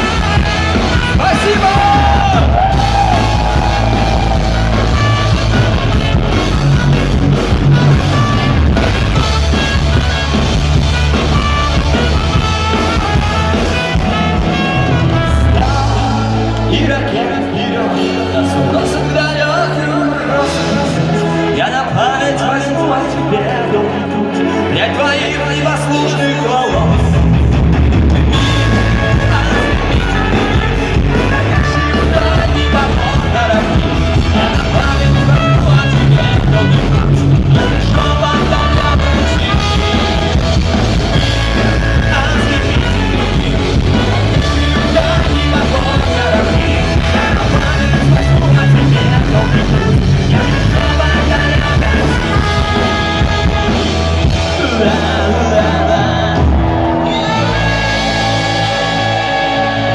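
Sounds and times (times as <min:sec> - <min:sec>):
rock band playing live: 0:00.0 - 0:59.9
person singing: 0:12.7 - 0:27.2, 0:28.3 - 0:59.9.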